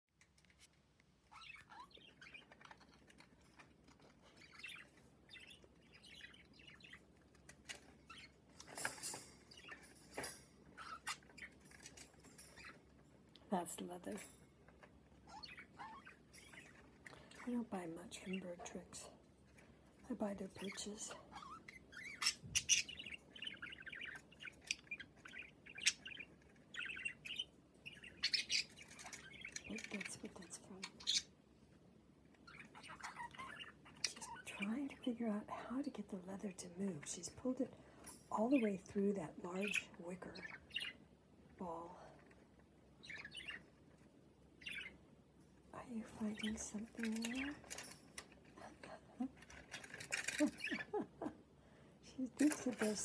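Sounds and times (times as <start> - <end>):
budgies chirping: 1.2 - 13.0, 13.6 - 18.9, 19.5 - 31.4, 32.3 - 45.1, 45.8 - 53.0
budgerigars chattering: 20.2 - 31.3, 44.6 - 45.0, 45.8 - 47.8, 49.5 - 51.3.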